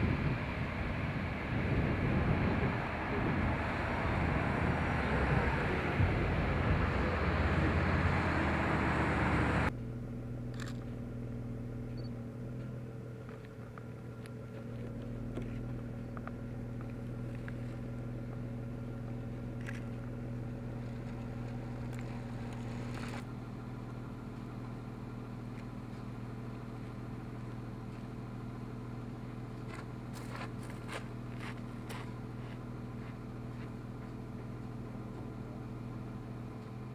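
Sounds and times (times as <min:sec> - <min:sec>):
rushing wind and road noise: 0:00.0 - 0:09.7
engine hum: 0:00.0 - 0:36.9.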